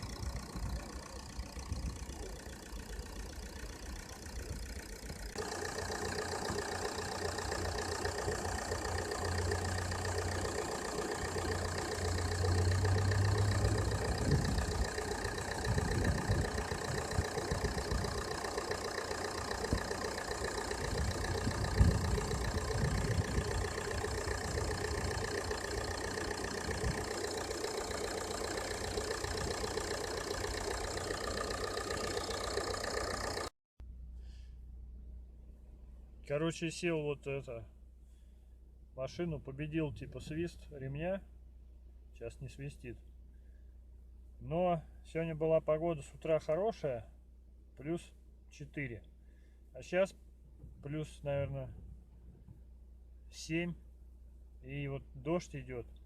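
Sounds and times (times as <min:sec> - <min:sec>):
drive belt running: 0:00.0 - 0:33.5
car engine idling: 0:00.0 - 0:36.3.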